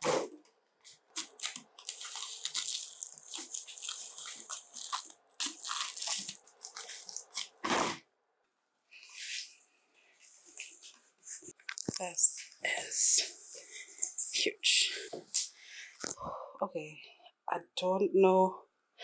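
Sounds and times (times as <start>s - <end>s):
packaging crackling and tearing: 1.1s - 7.9s.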